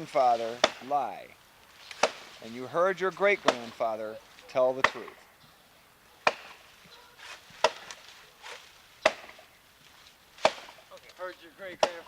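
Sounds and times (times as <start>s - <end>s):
axe chopping wood: 0.5s - 0.9s, 2.0s - 2.3s, 3.4s - 3.8s, 4.8s - 5.2s, 6.2s - 6.6s, 7.6s - 8.0s, 9.0s - 9.5s, 10.4s - 10.8s, 11.7s - 12.0s.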